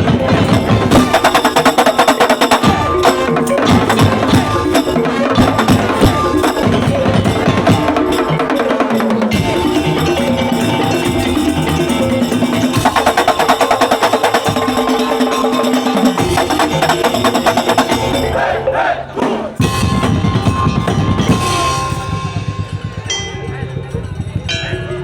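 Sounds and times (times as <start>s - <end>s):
drums: 0.0s - 25.0s
ringing tuned percussion: 0.0s - 25.0s.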